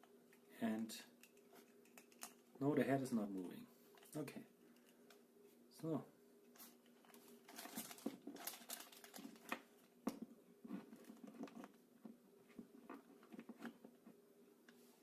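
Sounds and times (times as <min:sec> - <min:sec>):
hands handling plastic packaging: 0:06.5 - 0:11.8.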